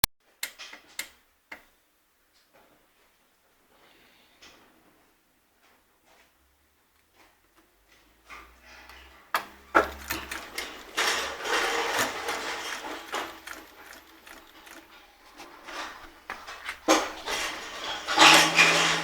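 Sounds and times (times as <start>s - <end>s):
sharp clicks: 9.4s - 15.0s
industrial sewing machine stitching: 9.4s - 19.0s.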